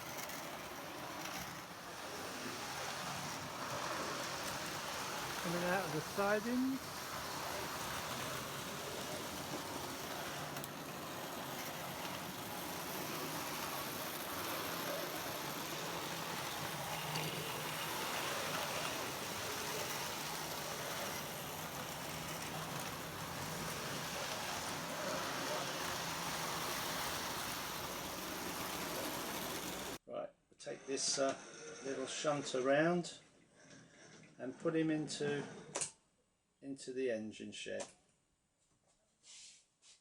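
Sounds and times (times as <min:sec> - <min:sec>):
electric motor hum: 0:00.0 - 0:30.0
model train wheels on rails: 0:00.0 - 0:30.0.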